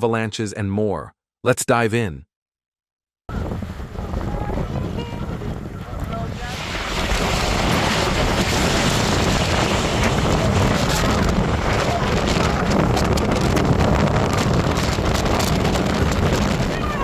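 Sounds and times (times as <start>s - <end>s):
rough water washing: 3.3s - 17.0s
storm wind blasting microphone: 3.3s - 17.0s.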